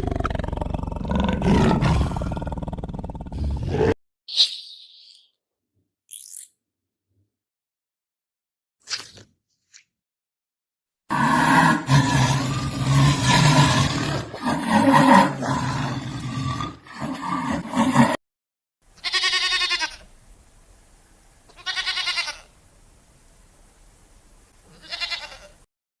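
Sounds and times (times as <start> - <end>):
dense low animal sound: 0.0 - 4.0
wavering bleat-like animal calls: 19.0 - 20.1, 21.5 - 22.6, 24.6 - 25.7.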